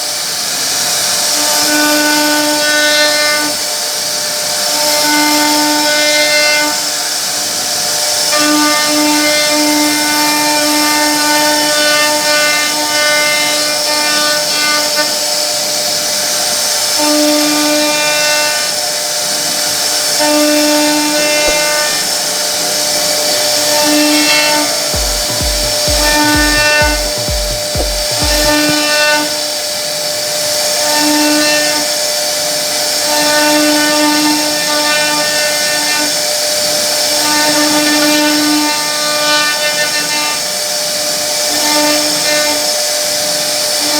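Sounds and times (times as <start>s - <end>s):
low evenly spaced pulses: 24.7s - 28.8s.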